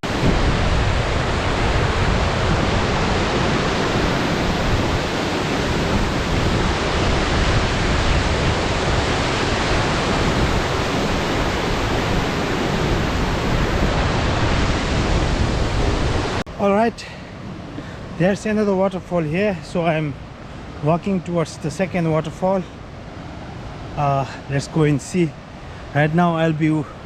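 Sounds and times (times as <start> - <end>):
waterfall rushing: 0.0 - 18.2.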